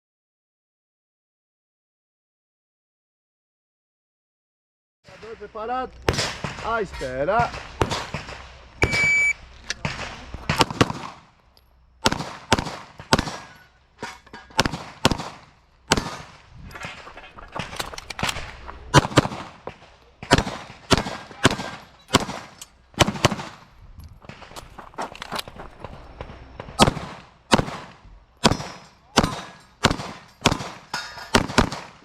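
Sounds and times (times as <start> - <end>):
pistol shots in rapid pairs: 5.1 - 9.1, 9.8 - 11.4, 12.0 - 13.8, 14.4 - 23.7, 26.1 - 32.0.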